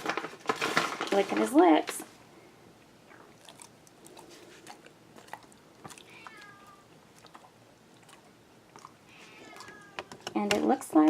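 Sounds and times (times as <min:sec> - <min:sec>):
dog chewing a treat: 0:03.2 - 0:10.3
cat meowing: 0:06.0 - 0:07.0, 0:09.1 - 0:10.2.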